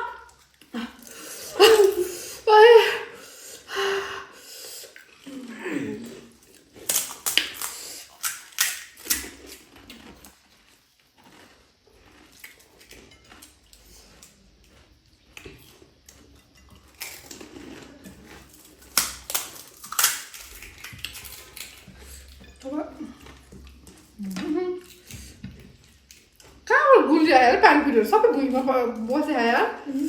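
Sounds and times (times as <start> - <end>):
crisp shells crunching: 6.2 - 15.3, 16.8 - 21.9.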